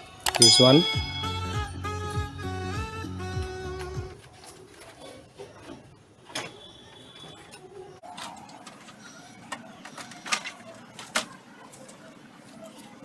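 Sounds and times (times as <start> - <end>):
light clicks and knocks of parts: 8.0 - 13.0.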